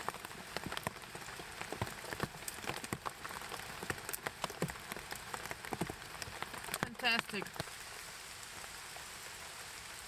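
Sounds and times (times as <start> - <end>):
heavy rain hissing: 6.0 - 10.0.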